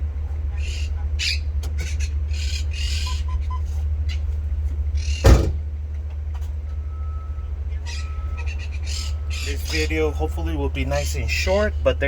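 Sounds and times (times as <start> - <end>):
car door slamming: 5.2 - 5.7.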